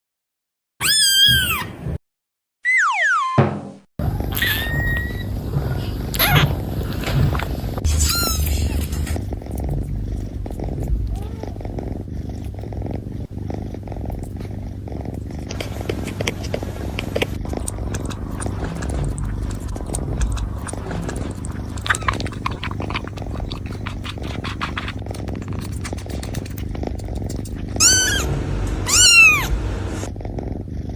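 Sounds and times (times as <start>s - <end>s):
kitten meowing: 0.8s - 1.7s, 4.1s - 5.2s, 6.1s - 6.5s, 8.0s - 9.1s, 10.8s - 12.0s, 15.9s - 24.9s, 27.8s - 29.6s
cat purring: 4.0s - 30.9s
kittens lapping milk: 6.0s - 30.1s.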